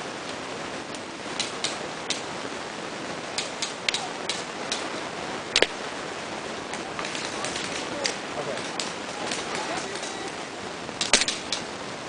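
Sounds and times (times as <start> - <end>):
steady hiss: 0.0 - 12.0
airsoft pistol pops: 11.0 - 11.7.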